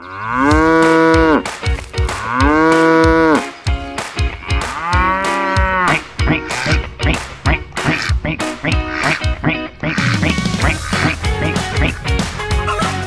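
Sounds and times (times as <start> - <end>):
cow mooing: 0.0 - 1.4, 2.2 - 3.5, 4.5 - 6.5
steady beat: 0.5 - 13.0.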